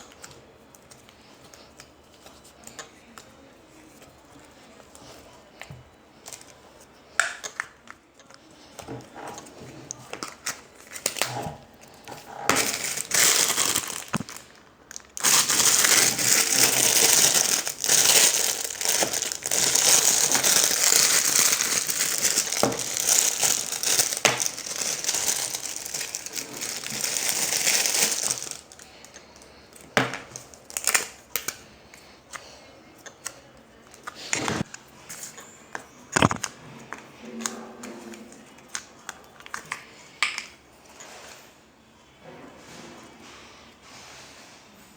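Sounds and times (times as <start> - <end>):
slime crackling and popping: 12.6 - 28.7.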